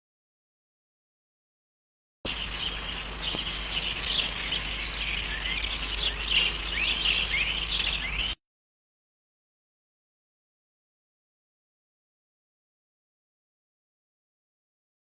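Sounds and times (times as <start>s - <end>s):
small birds chirping: 2.3s - 8.4s
steady low hum: 2.3s - 8.4s.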